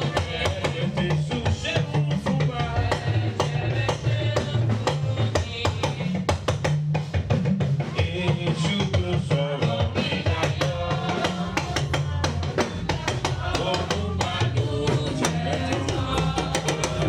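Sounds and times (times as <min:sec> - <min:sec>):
drum kit steady beat: 0:00.0 - 0:17.0
band music: 0:12.4 - 0:17.0.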